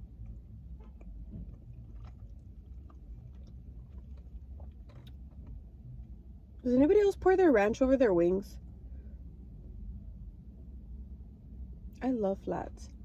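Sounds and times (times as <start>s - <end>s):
chewing chicken wings: 0.0s - 5.6s
car interior rumble: 0.0s - 13.0s.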